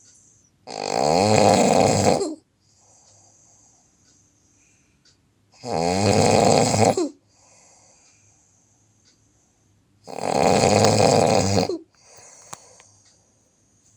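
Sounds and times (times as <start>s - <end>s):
person snoring loudly: 0.7s - 2.4s, 5.6s - 7.2s, 10.1s - 11.8s
faint breathing: 2.5s - 5.2s, 7.1s - 9.7s, 11.7s - 13.9s.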